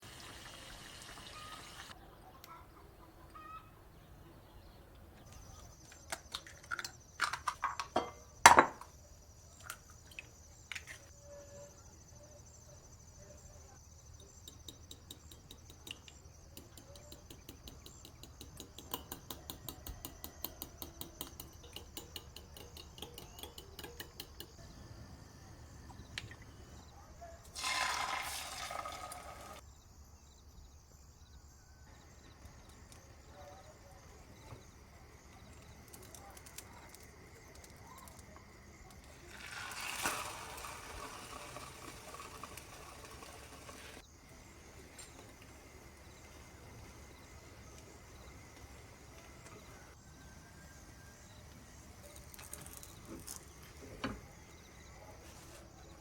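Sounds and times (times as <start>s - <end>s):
utensils knocking on dishes: 16.6s - 24.5s.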